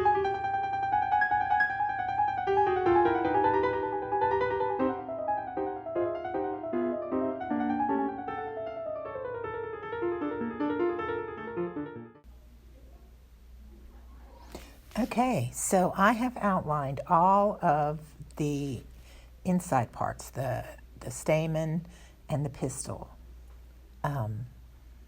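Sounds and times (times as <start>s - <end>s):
piano music: 0.0s - 12.2s.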